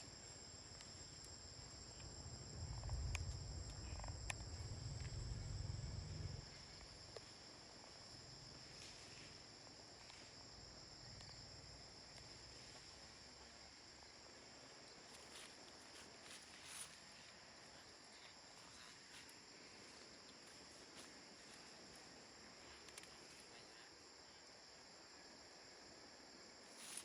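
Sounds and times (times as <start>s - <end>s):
insects chirring: 0.0s - 27.0s
low rumble: 1.6s - 6.9s
faint clicks: 2.7s - 5.2s, 22.8s - 23.3s.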